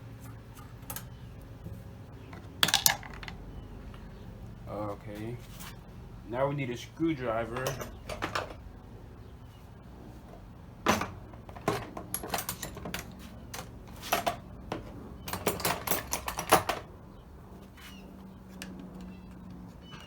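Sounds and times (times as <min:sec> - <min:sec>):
hand tools clicking and clattering: 0:02.3 - 0:04.0, 0:07.2 - 0:08.6, 0:10.3 - 0:16.9.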